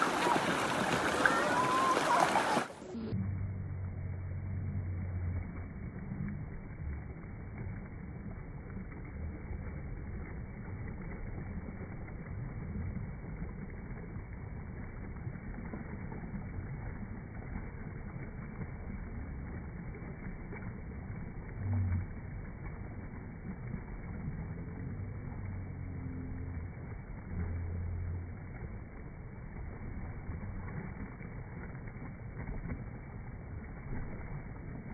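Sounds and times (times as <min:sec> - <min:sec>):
waterfall roar: 0:00.0 - 0:03.0
low rumbles: 0:00.0 - 0:18.2, 0:18.8 - 0:34.9.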